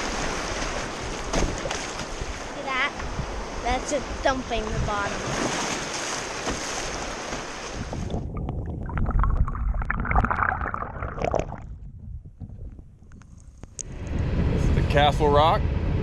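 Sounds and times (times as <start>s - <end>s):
hull thumping rocks: 0.0s - 2.4s, 6.2s - 7.6s
rushing water: 0.0s - 11.6s
wind: 0.0s - 16.0s
low rumble: 8.0s - 16.0s.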